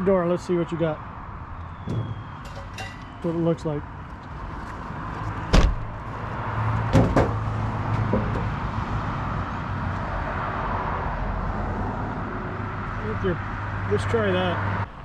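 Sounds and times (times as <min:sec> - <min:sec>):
outdoor rumble: 0:01.2 - 0:13.9
car door slamming: 0:01.8 - 0:02.4, 0:05.4 - 0:06.0.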